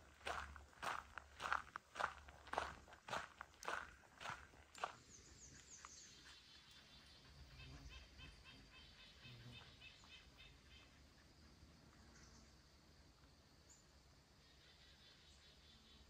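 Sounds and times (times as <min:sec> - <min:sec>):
footstep: 0:00.0 - 0:05.0.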